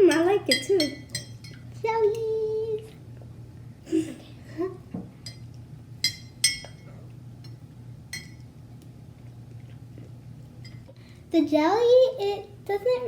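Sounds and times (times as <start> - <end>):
spoon clinking against glass: 0.1 - 1.6, 5.2 - 5.4, 6.0 - 6.8, 7.4 - 8.4.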